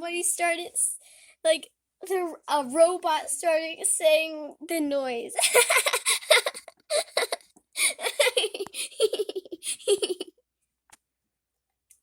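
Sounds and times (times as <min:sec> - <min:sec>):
girls giggling and laughing: 0:05.4 - 0:10.3.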